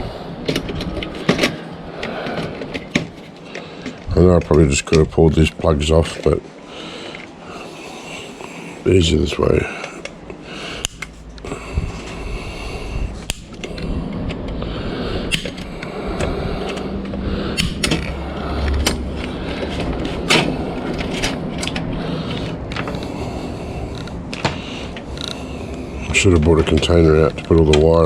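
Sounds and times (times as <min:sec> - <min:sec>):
wires and metal clattering: 0:07.1 - 0:28.0
cutters snipping wire: 0:10.8 - 0:11.6, 0:13.2 - 0:13.9, 0:17.5 - 0:21.8.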